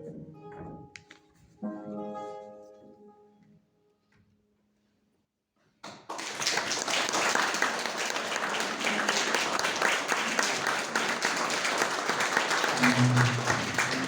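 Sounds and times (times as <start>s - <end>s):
audience applause: 5.8s - 14.0s.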